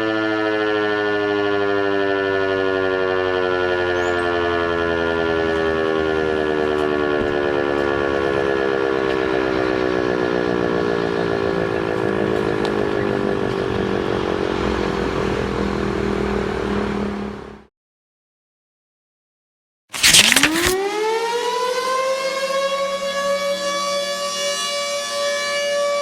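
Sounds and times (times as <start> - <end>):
siren winding down: 0.0 - 14.4, 20.0 - 26.0.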